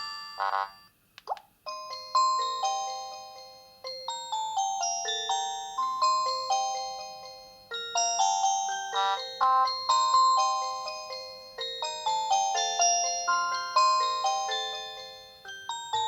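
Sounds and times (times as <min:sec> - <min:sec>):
phone ringtone chiming melody: 0:06.6 - 0:16.0.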